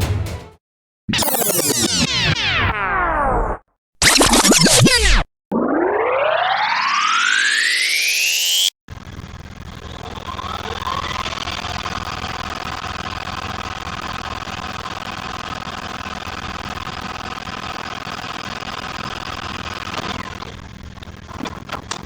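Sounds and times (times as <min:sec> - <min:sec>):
rewind mechanical whir: 0:06.6 - 0:22.0.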